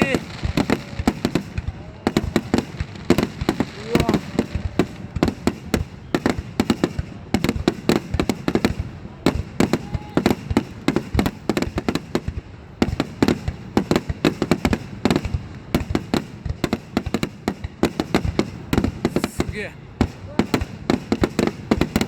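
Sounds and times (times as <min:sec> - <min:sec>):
fireworks bursting: 0:00.0 - 0:22.0
fireworks crackling: 0:00.0 - 0:22.0.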